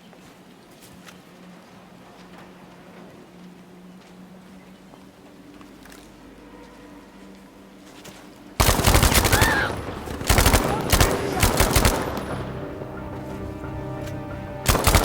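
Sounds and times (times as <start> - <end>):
video game automatic gunfire: 8.6 - 12.7, 14.7 - 15.0.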